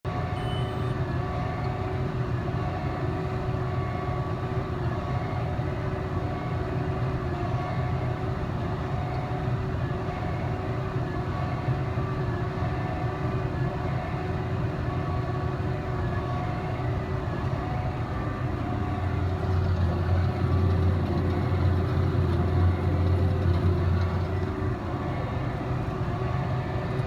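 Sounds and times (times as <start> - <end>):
tractor engine running: 18.2 - 27.0
baler running: 18.7 - 24.6.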